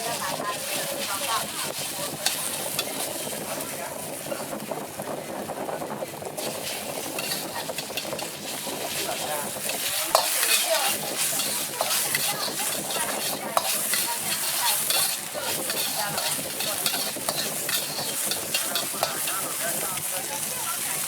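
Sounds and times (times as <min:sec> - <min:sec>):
metal utensil scraping a pan: 0:00.0 - 0:04.2, 0:06.4 - 0:21.0
food sizzling in a wok: 0:00.0 - 0:21.0.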